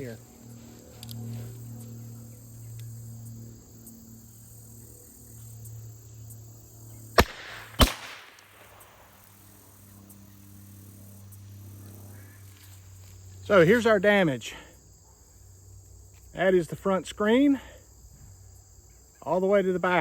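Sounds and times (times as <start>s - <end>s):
crickets chirping: 0.0s - 20.0s
revolver gunshots: 7.2s - 9.6s.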